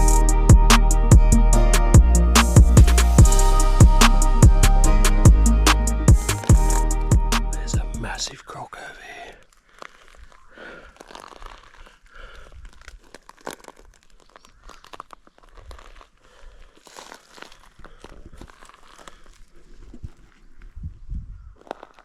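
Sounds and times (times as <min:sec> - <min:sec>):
footsteps crunching through dry leaves: 0:09.4 - 0:20.8.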